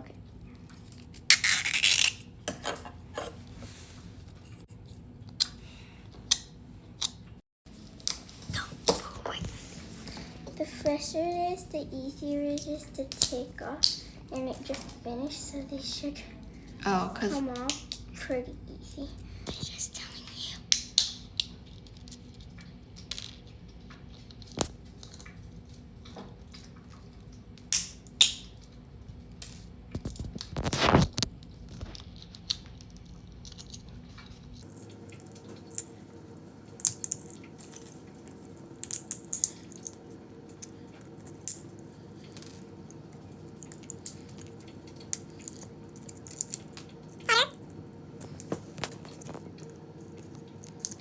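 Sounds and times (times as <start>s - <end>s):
plastic crunching: 29.5s - 34.9s.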